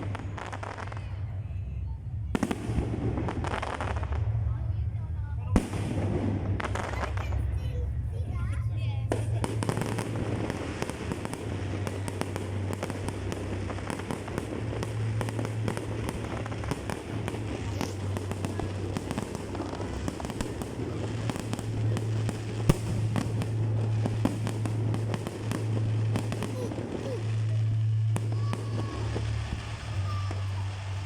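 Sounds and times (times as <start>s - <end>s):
fireworks crackling and banging: 0.0s - 31.0s
steady low hum: 0.0s - 31.0s
sharp firework crack: 5.6s - 7.9s, 9.0s - 31.0s.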